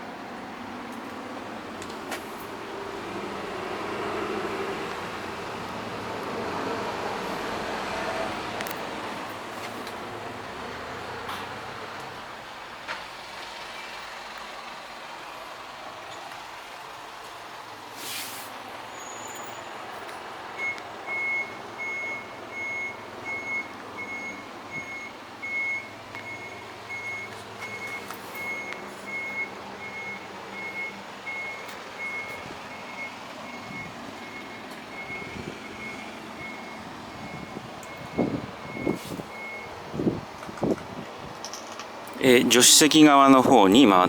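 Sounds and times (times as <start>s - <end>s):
truck warning beeper: 20.6s - 40.1s.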